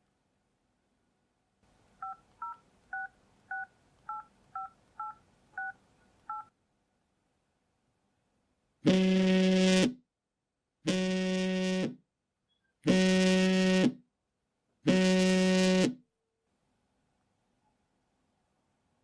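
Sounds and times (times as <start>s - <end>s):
phone vibrating on hard surface: 10.9s - 12.0s, 12.9s - 14.0s, 14.9s - 16.0s.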